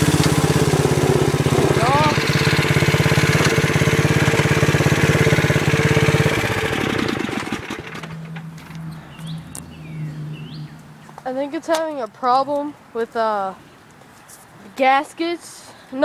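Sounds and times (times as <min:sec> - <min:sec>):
mower engine running: 0:00.0 - 0:08.8.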